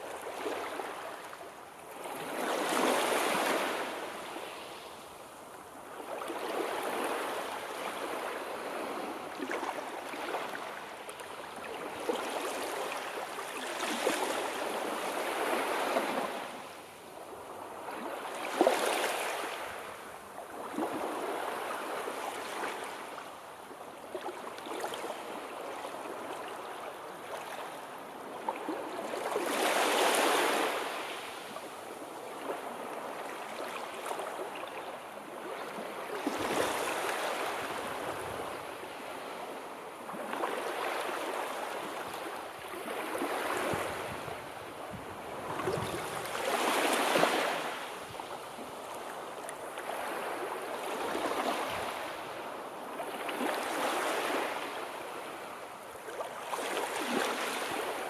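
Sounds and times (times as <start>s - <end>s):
waves washing in: 40.0s - 58.0s.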